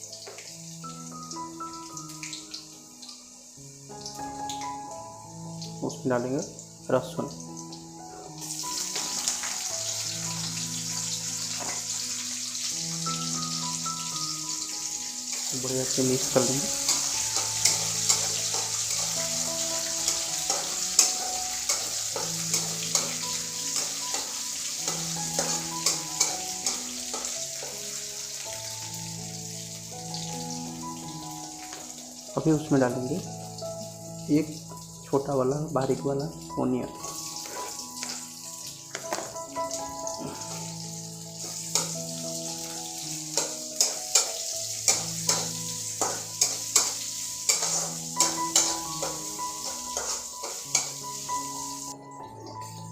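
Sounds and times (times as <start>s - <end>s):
food sizzling in hot oil: 0.0s - 52.9s
soft background music: 0.0s - 52.9s
spatula tapping and scraping pan: 16.9s - 19.2s, 20.1s - 27.8s, 43.4s - 51.0s.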